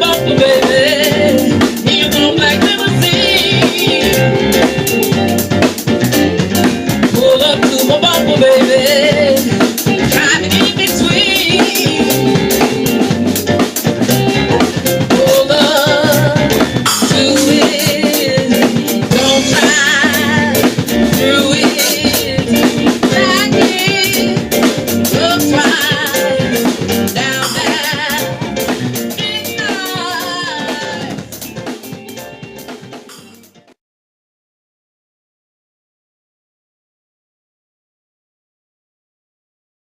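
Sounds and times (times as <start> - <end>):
person singing with vibrato: 0.0 - 5.4, 7.1 - 13.2, 15.0 - 28.4, 29.2 - 31.3
drum kit snare and rimshot: 0.0 - 33.8
soul band music: 0.0 - 33.8.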